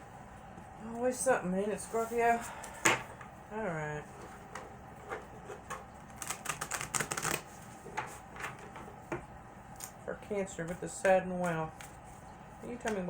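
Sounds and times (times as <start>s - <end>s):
cards being shuffled: 6.1s - 8.1s.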